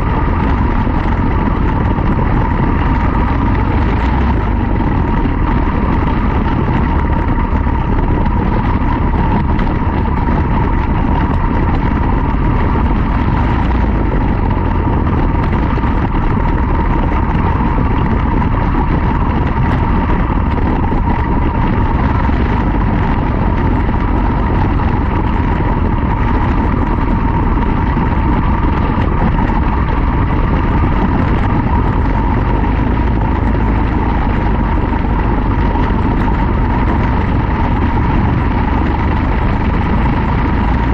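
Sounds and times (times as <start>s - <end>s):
low rumble: 0.0s - 40.9s
race car engine running hard: 0.0s - 40.9s.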